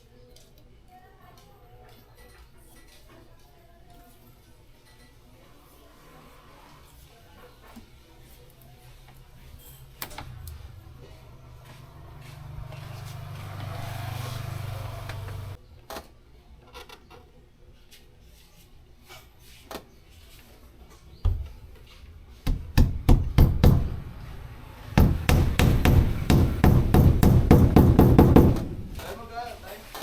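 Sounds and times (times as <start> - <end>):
hammer blows: 22.5 - 29.2.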